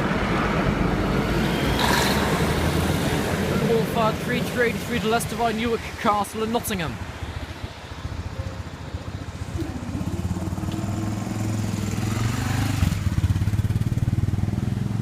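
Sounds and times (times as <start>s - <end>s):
diesel railcar engine working hard: 8.1s - 11.9s.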